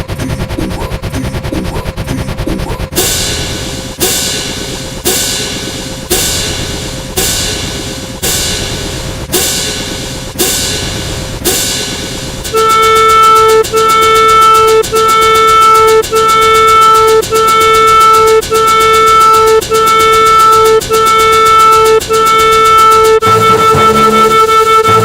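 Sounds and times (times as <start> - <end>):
steady electronic tone: 0.0 - 25.0
sharp ringing crash: 3.0 - 13.5.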